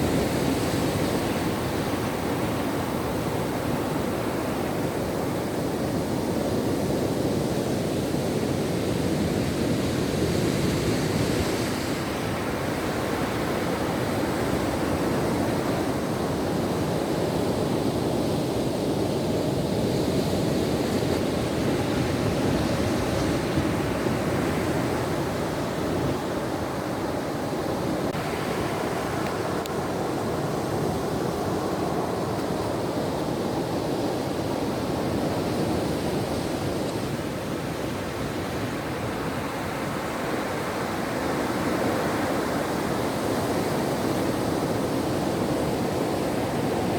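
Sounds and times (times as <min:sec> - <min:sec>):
ocean waves breaking on shore: 0:00.0 - 0:46.9.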